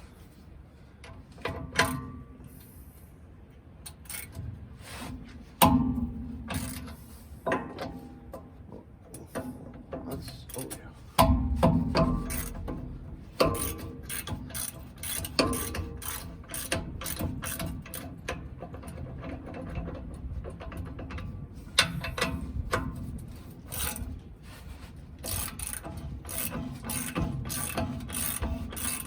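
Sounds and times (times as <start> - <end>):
ratchet wrench clicking: 3.9 - 4.4, 12.2 - 12.6, 13.4 - 18.4, 25.2 - 29.0
sharp metal knocks: 11.2 - 20.0.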